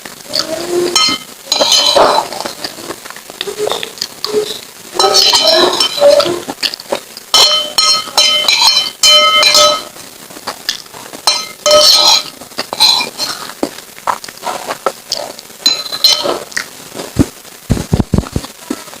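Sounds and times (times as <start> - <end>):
spoon clinking against a bowl: 0.9 - 2.6, 5.0 - 6.3, 7.3 - 9.9, 11.2 - 13.3, 15.6 - 16.4.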